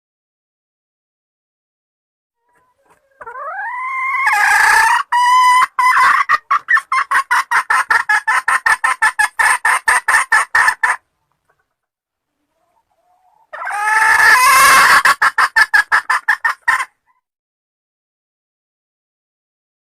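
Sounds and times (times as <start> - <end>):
hen cackling and clucking: 2.4 - 17.3.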